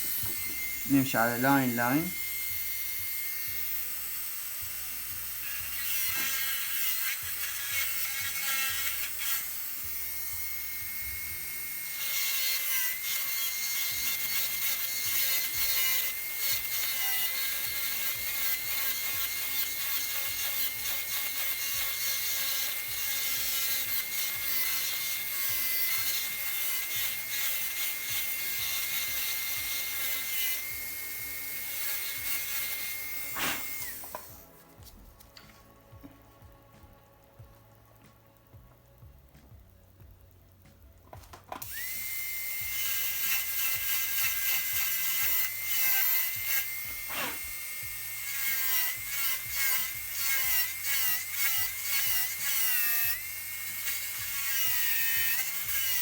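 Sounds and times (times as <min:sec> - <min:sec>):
dental drill whining: 0:00.0 - 0:34.5, 0:41.6 - 0:56.0
drill bur grinding tooth: 0:00.0 - 0:34.5, 0:41.6 - 0:56.0
background music with bass: 0:33.2 - 0:41.7.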